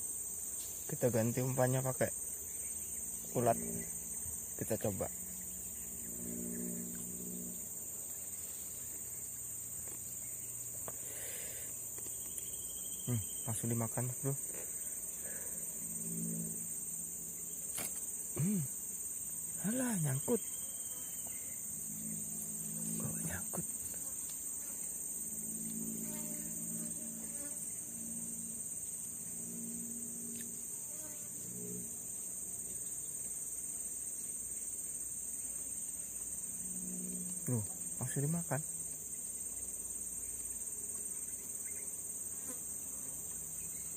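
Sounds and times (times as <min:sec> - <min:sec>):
insects buzzing: 0:00.0 - 0:43.9
low steady hum: 0:02.2 - 0:11.3, 0:14.5 - 0:19.8.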